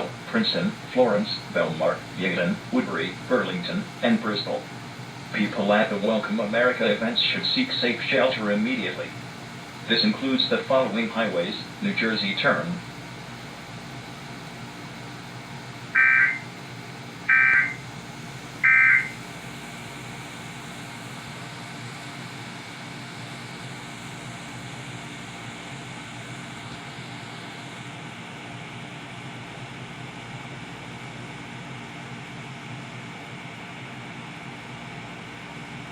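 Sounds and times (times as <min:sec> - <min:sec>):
hiss and hum of dead air: 0:00.0 - 0:35.9
digital data tone bursts: 0:16.0 - 0:16.5, 0:17.3 - 0:17.8, 0:18.6 - 0:19.2.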